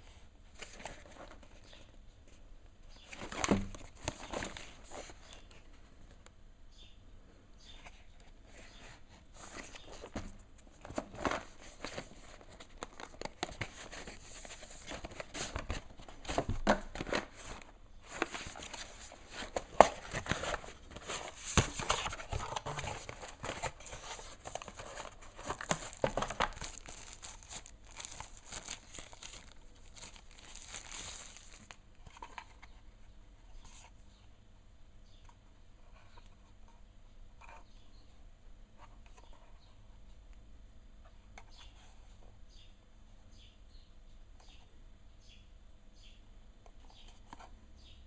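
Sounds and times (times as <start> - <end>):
plastic and paper crinkling: 3.1 - 5.6, 9.3 - 32.6.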